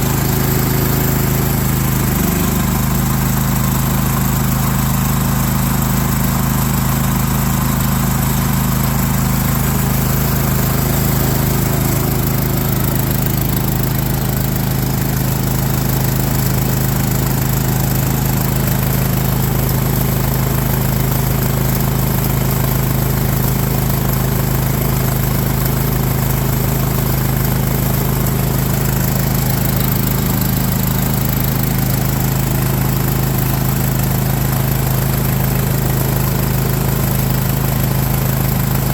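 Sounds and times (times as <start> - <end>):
small engine running steadily: 0.0 - 38.9.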